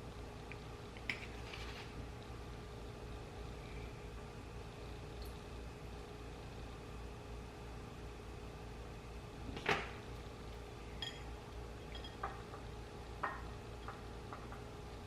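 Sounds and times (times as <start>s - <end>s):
steady low hum: 0.0s - 15.0s
utensil clinking on dish: 11.0s - 12.4s.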